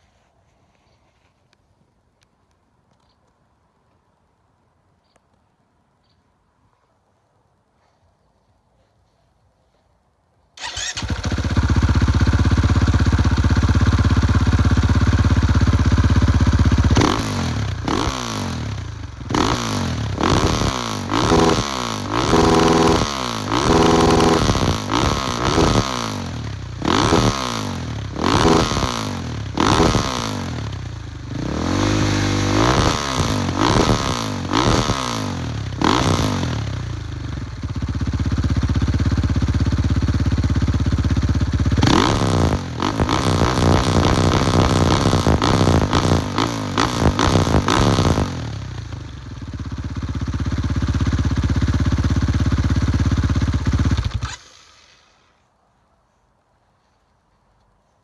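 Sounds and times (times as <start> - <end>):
motorcycle engine revving: 10.6 - 55.2.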